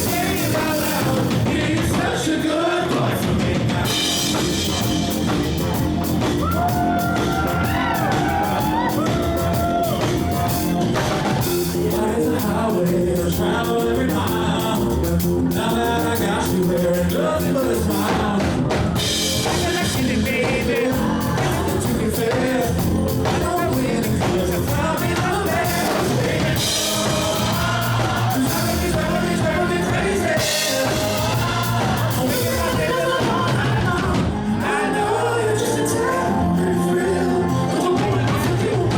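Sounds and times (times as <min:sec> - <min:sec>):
person singing: 0:00.0 - 0:05.1, 0:06.4 - 0:38.9
dance beat with drums and bass: 0:03.3 - 0:12.1, 0:16.6 - 0:34.2.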